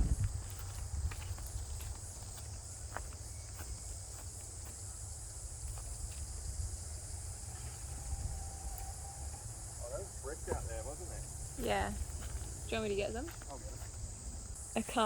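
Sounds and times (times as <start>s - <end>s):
insects chirring: 0.0s - 15.0s.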